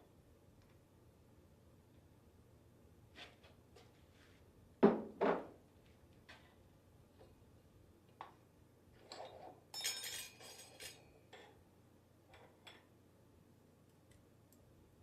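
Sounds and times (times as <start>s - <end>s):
metal parts clinking: 9.1s - 11.1s.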